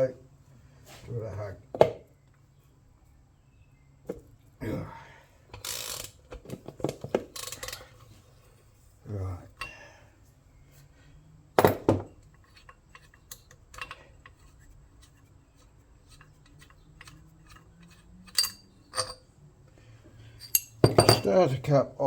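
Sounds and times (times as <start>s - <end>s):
metal tools clinking on engine parts: 6.8s - 8.1s, 11.6s - 14.6s, 16.0s - 19.3s, 20.3s - 21.4s.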